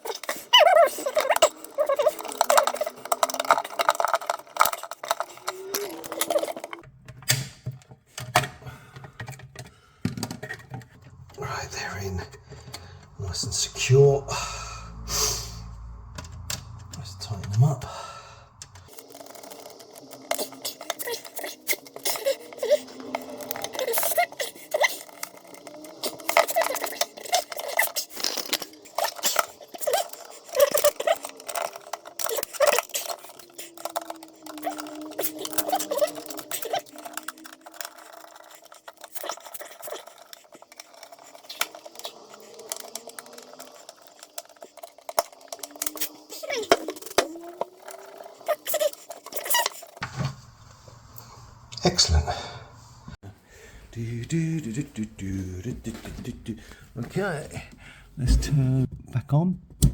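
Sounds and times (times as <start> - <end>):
screwdriver clicking and scraping on screws: 0.0 - 11.3, 18.5 - 50.0.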